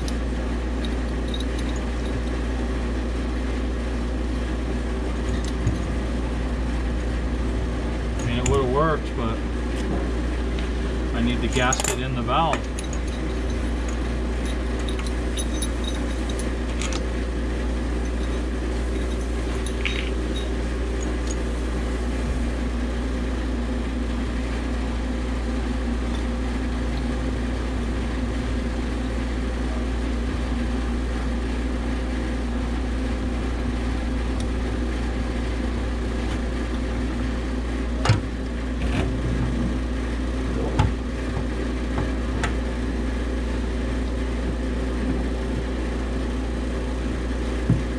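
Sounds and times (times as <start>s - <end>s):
compressor humming: 0.0s - 47.9s.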